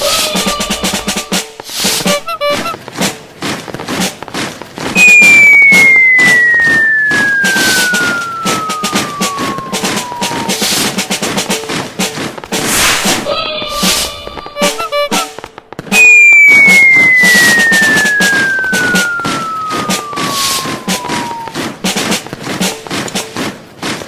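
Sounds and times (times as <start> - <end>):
short tooting tones: 0.0 - 2.8, 5.0 - 10.7, 12.7 - 21.6
rapid crackling pops: 0.0 - 24.0
long descending whistle: 5.0 - 11.0, 15.9 - 21.7.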